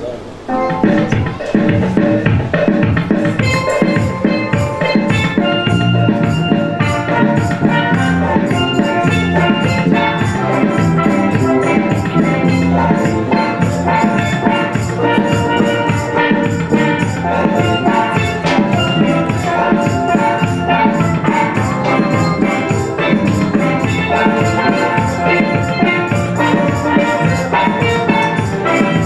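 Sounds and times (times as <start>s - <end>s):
music with steady beat and percussion: 0.5s - 29.0s.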